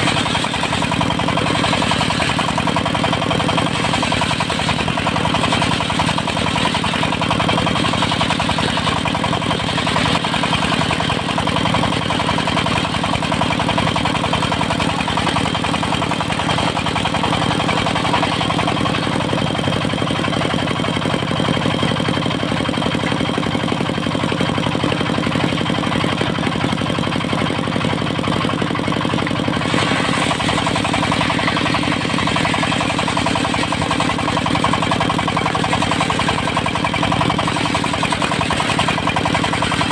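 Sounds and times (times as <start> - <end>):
diesel engine running: 0.0 - 39.9
circular saw cutting wood: 29.6 - 39.9.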